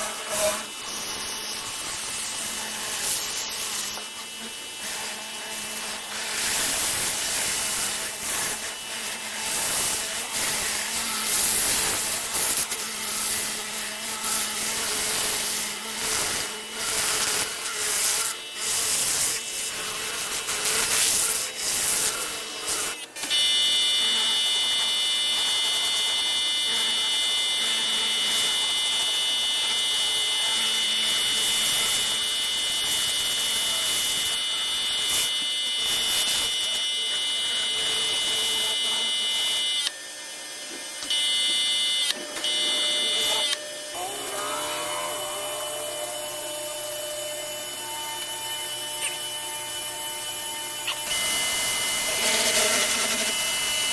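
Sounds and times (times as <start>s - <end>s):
pressure washer spraying: 0.0s - 23.0s.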